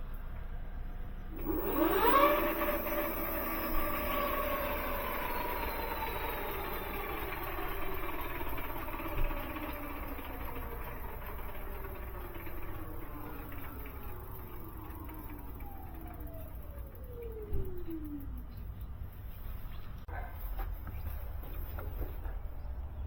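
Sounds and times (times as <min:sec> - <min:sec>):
hub motor whining and grinding: 0:01.3 - 0:19.8.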